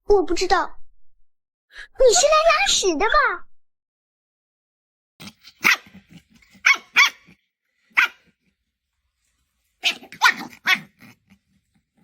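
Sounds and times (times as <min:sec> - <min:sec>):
dog barking: 0:05.5 - 0:06.0, 0:06.6 - 0:08.3, 0:09.8 - 0:11.2.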